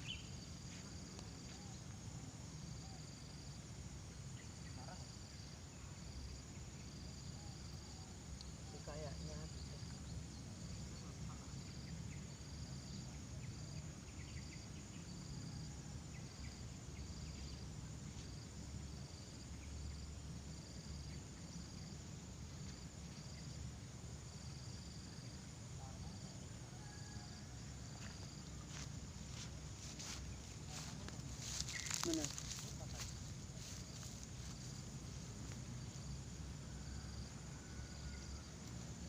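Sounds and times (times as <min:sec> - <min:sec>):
high-pitched insect whine: 0:00.0 - 0:39.0
insects chirping: 0:00.0 - 0:39.0.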